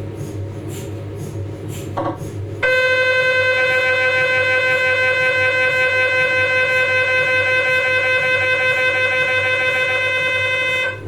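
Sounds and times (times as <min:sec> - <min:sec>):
mri scanner buzzing: 0:02.6 - 0:11.0.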